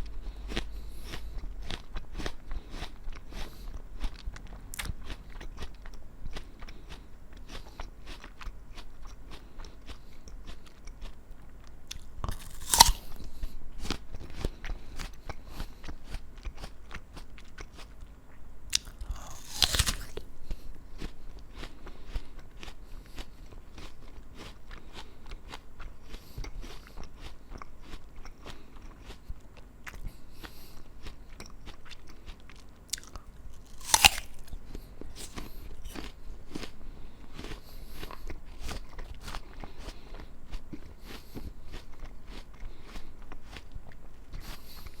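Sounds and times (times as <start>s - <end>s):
person chewing crisp apple: 0.0s - 45.0s.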